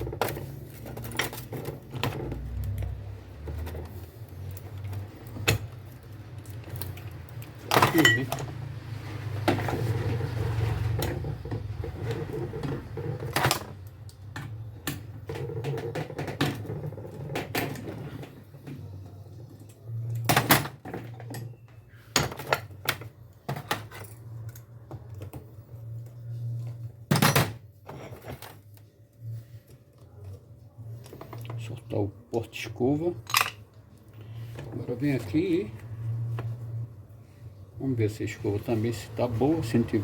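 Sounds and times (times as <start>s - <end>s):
hand tools clicking and knocking: 0.0s - 8.6s.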